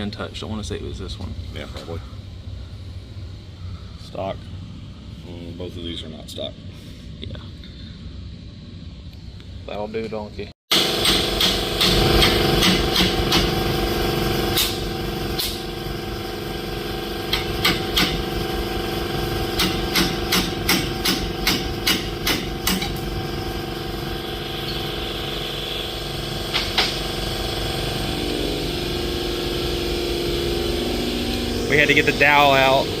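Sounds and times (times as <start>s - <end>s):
steady machine hum: 0.0s - 33.0s
hammer hitting steel punch: 11.0s - 13.6s, 19.6s - 23.0s.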